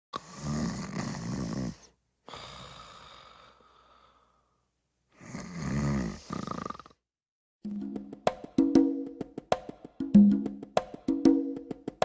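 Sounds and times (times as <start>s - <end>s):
person snoring: 0.2s - 4.5s, 5.2s - 7.0s
long breath: 2.2s - 4.6s.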